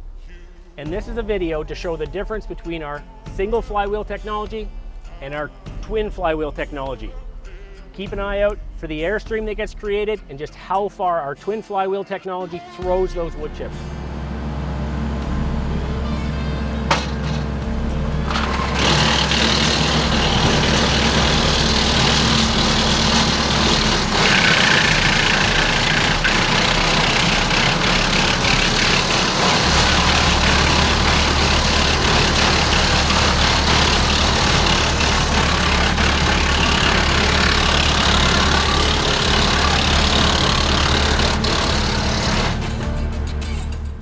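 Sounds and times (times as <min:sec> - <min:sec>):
tractor engine drone: 0:13.0 - 0:43.9
wood chipper rushing noise: 0:13.3 - 0:43.4.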